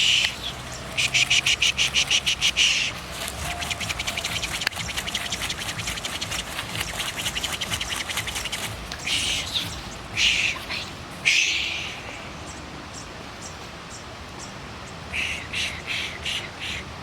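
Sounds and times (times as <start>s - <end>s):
rustling of shaken herbs: 0.0s - 11.2s.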